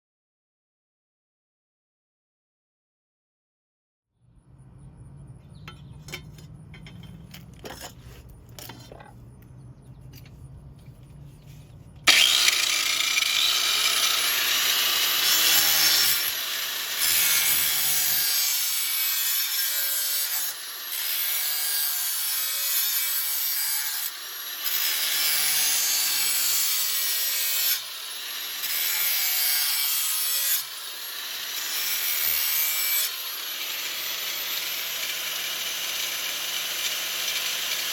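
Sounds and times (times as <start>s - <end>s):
power grinder grinding steel: 12.0s - 37.9s.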